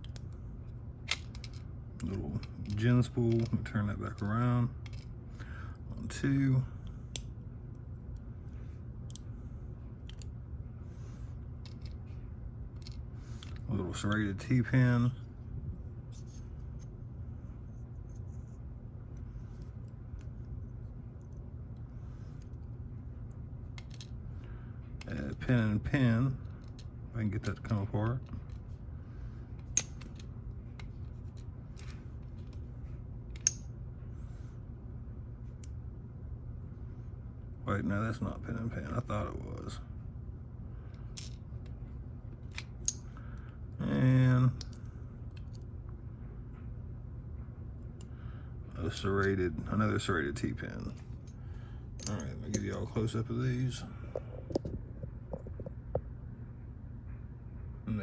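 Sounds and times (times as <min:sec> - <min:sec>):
low hum: 0:00.0 - 0:58.0
lock pins clicking: 0:29.6 - 0:30.3, 0:33.3 - 0:33.7
small metal clicks: 0:29.6 - 0:32.6, 0:33.3 - 0:33.7.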